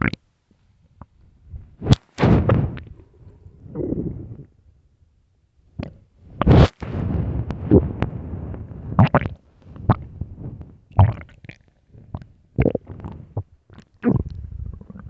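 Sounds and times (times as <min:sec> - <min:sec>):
stomach growling and gurgling: 0:02.6 - 0:04.6, 0:05.8 - 0:15.0.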